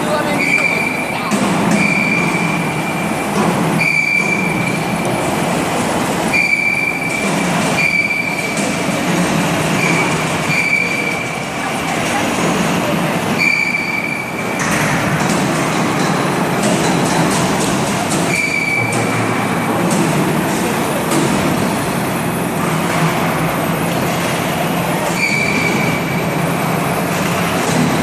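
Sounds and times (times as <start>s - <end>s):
hydraulic plate shear running: 0.0s - 28.0s.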